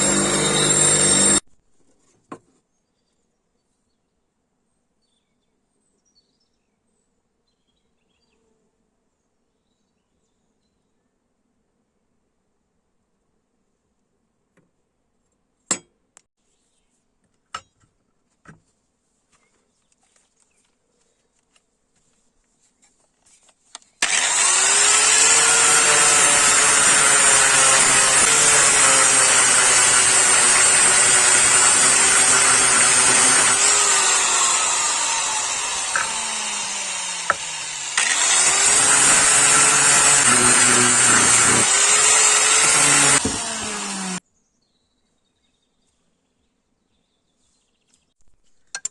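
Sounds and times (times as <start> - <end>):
power tool grinding steel: 0.0 - 1.4, 24.0 - 44.2.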